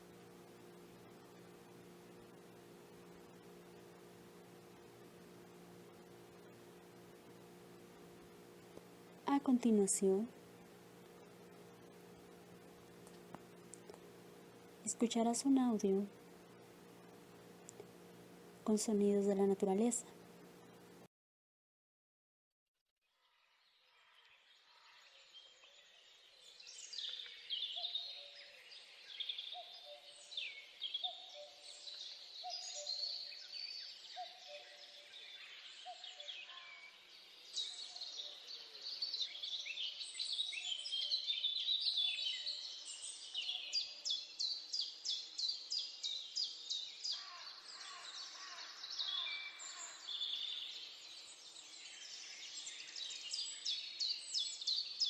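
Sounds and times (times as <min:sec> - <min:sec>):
songbirds singing: 0:23.3 - 0:55.0.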